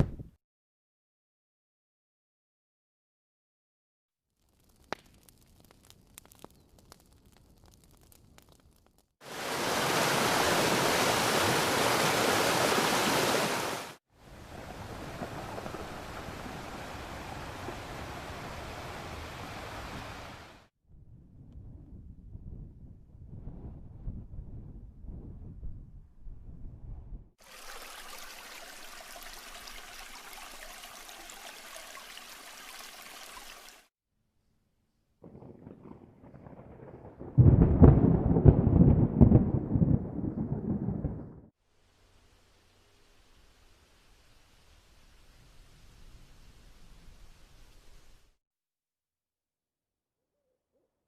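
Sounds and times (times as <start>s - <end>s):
steady running water: 9.2s - 14.0s, 27.4s - 33.9s
low rumble: 20.9s - 27.3s.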